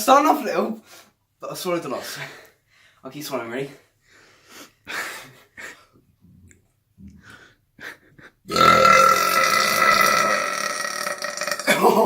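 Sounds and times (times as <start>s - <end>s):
man gulping air: 6.1s - 7.5s
loud burp: 8.5s - 12.0s.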